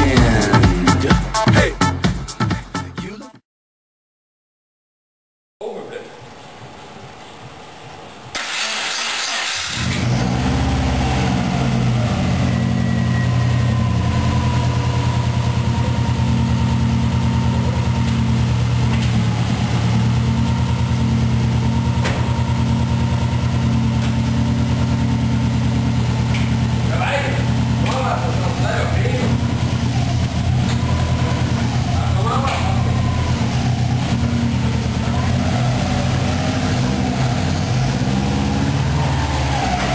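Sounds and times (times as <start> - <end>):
car engine idling: 0.0 - 2.0, 8.0 - 39.9
engine starter cranking: 8.4 - 10.4.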